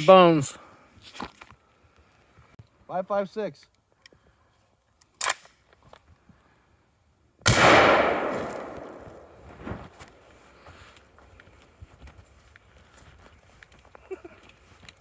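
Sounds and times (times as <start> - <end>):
rifle shot with echo: 7.5 - 10.2.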